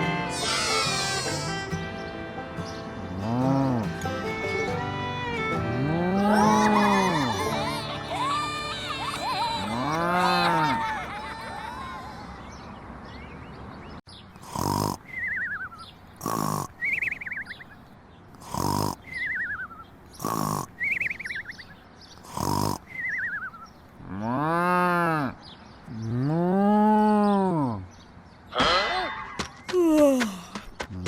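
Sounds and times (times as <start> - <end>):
cow mooing: 24.1 - 25.3.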